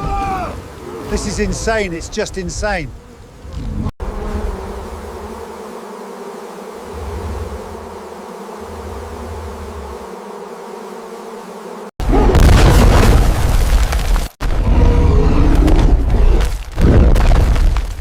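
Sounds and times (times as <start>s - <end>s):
bee swarm buzzing: 0.0s - 12.0s
loud booming crashing rumble: 12.2s - 16.1s.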